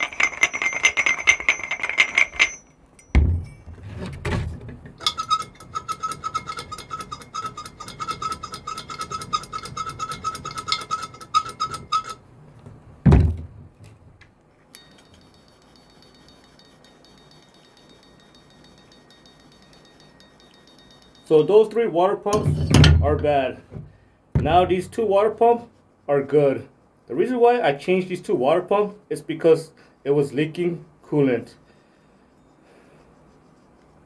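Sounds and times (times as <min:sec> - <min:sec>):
water pump rattling and grinding: 0:00.0 - 0:02.6, 0:03.8 - 0:12.2
pump bearing whine: 0:00.0 - 0:12.2, 0:14.7 - 0:21.4
heavy thunks: 0:03.1 - 0:05.0, 0:13.0 - 0:13.8, 0:22.4 - 0:24.8.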